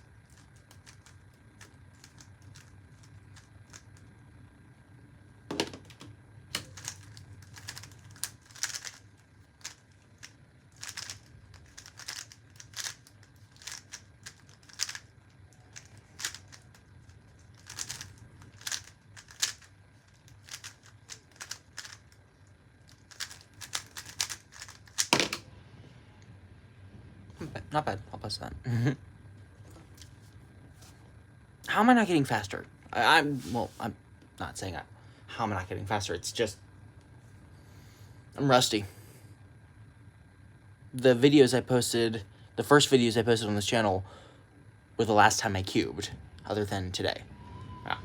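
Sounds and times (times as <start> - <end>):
puzzle cube clicking and rattling: 0.2 - 4.1, 6.6 - 22.2, 22.9 - 25.4.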